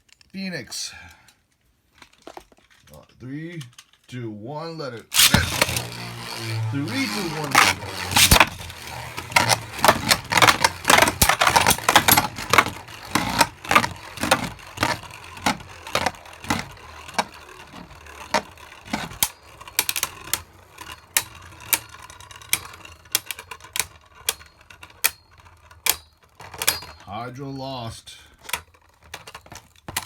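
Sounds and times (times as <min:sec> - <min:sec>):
spinning tops clashing: 0:05.2 - 0:20.0.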